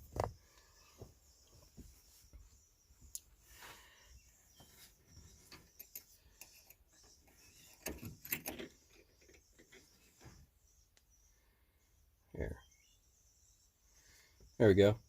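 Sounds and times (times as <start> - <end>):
clicks and rattles of parts: 5.4 - 10.0.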